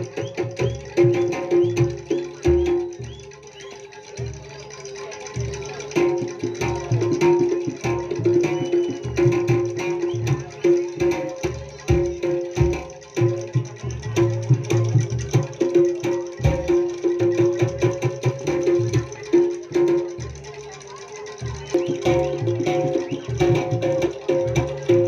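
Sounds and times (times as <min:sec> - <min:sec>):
hand drums beating fast rhythm: 0:00.0 - 0:25.0.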